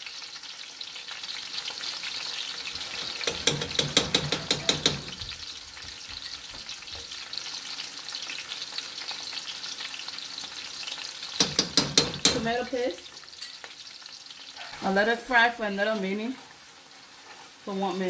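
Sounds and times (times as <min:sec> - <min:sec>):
food sizzling in hot oil: 0:00.0 - 0:18.0
sharp knocks in pot: 0:11.4 - 0:12.5.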